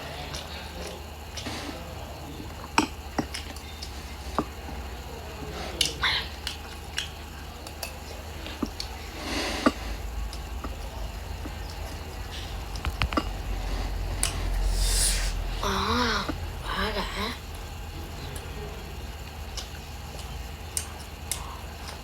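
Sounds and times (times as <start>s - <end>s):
crunchy eating: 0.0s - 22.0s
chewing and mouth noises: 19.4s - 22.0s.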